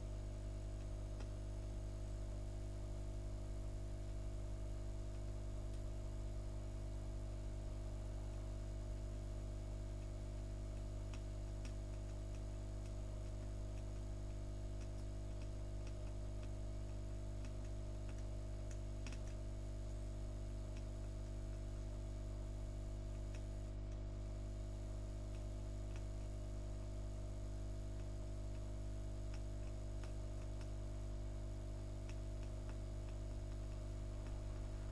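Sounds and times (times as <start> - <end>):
low electrical hum: 0.0 - 34.9
faint ticks: 0.1 - 2.3, 9.6 - 22.2, 22.8 - 34.9.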